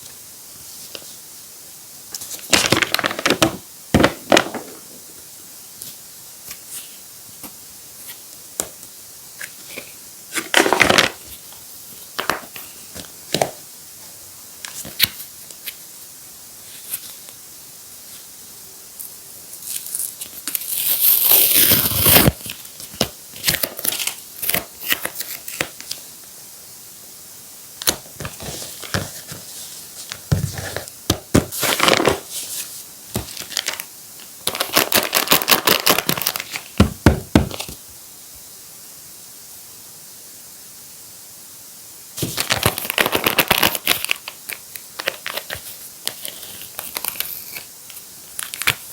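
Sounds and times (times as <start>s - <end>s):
paper crinkling and rustling: 2.2s - 5.0s, 9.8s - 11.4s, 27.9s - 37.8s, 42.2s - 48.9s
paper tearing: 19.9s - 22.4s.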